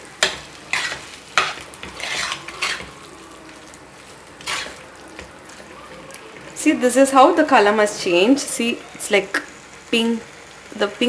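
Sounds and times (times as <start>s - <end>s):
soft sizzle: 0.0s - 11.0s
spoon scraping earthenware pot: 0.2s - 5.6s.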